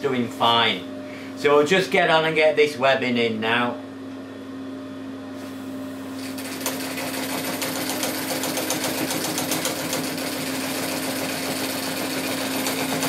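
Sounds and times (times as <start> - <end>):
sewing machine stitching: 6.2 - 13.0.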